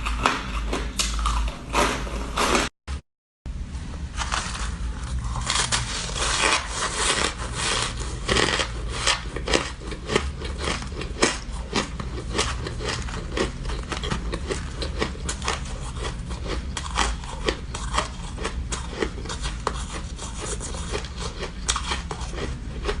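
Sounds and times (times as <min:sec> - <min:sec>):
ice being chewed: 0:05.0 - 0:23.0.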